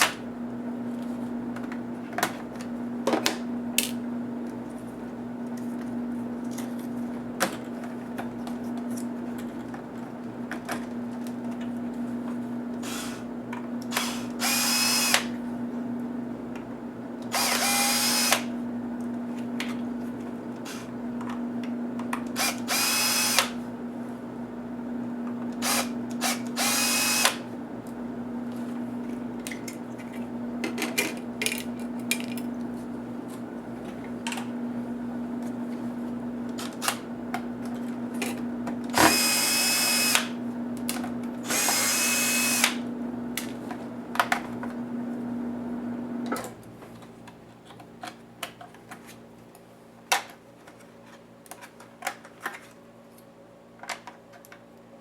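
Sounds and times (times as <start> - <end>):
electric screwdriver whirring: 13.9 - 15.4, 17.3 - 18.5, 22.4 - 23.6, 25.6 - 27.4, 38.9 - 40.4, 41.4 - 42.8.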